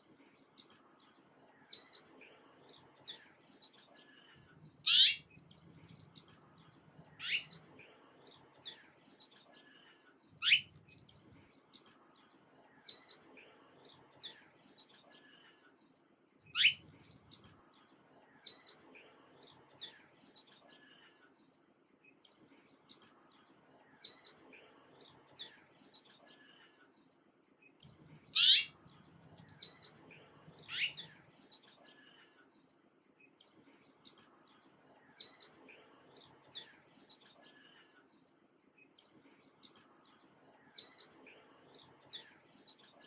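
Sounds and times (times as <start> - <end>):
birds chirping: 1.6 - 12.0, 16.5 - 17.5, 27.8 - 32.2.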